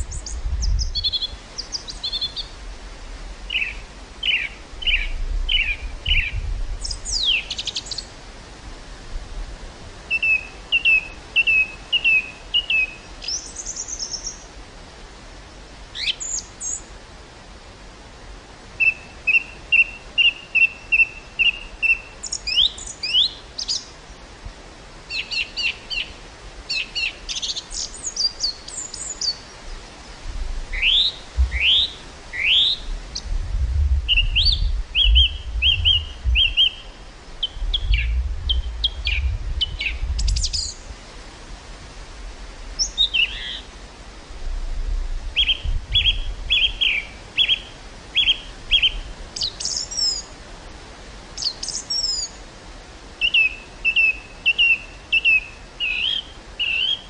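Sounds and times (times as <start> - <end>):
wind buffeting microphone: 0.0 - 1.4, 4.7 - 7.3, 29.6 - 42.5, 44.2 - 47.2
small birds chirping: 0.0 - 2.6, 3.5 - 8.1, 10.1 - 14.6, 16.0 - 16.9, 18.8 - 24.3, 25.1 - 33.4, 34.0 - 40.9, 42.8 - 43.7, 45.4 - 50.4, 51.4 - 52.4, 53.2 - 57.0.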